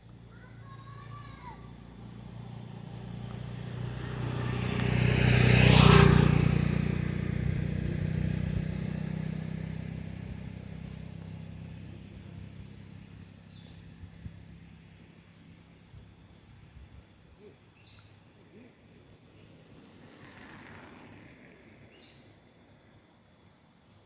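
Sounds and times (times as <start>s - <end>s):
vehicle driving past: 0.8s - 15.8s, 18.8s - 22.7s.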